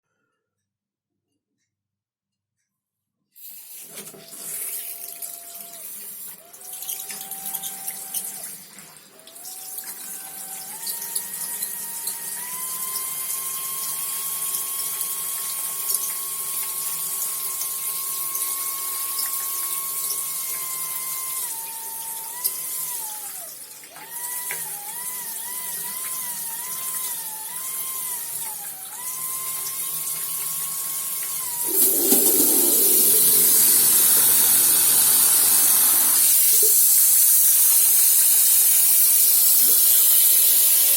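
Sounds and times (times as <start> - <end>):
whistling plumbing: 31.1 - 36.8
running water hiss: 31.5 - 40.9.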